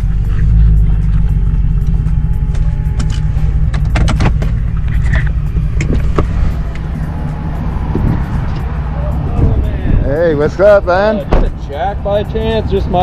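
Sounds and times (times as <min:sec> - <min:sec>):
truck engine rumbling: 0:00.0 - 0:13.0
sharp clicks and knocks: 0:01.8 - 0:06.9.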